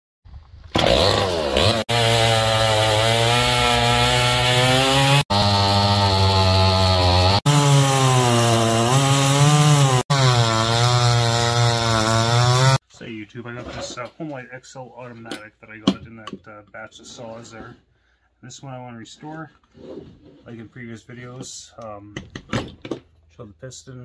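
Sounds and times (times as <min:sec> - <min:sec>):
chainsaw running at high revs: 0:00.8 - 0:12.8.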